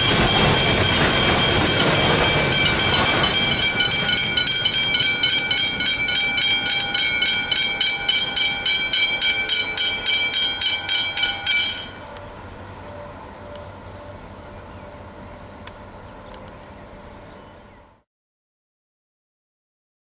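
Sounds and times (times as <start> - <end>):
level crossing bell ringing: 0.0 - 12.1
passing train rumble: 0.0 - 18.0.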